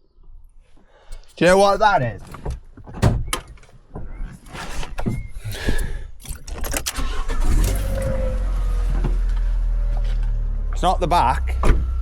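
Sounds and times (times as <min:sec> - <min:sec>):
car engine starting and idling: 0:06.2 - 0:12.0.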